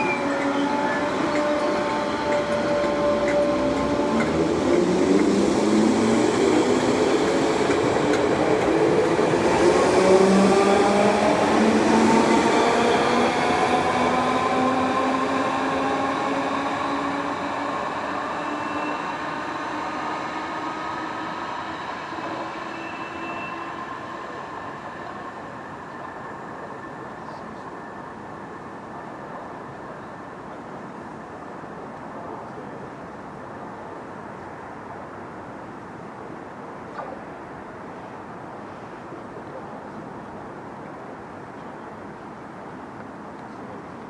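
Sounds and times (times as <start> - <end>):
electric train motors whining: 0.0 - 9.3.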